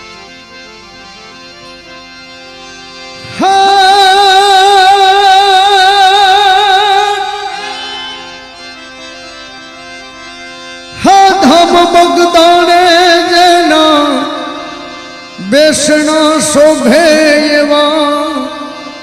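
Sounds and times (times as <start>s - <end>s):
held instrumental notes: 0.0s - 19.0s.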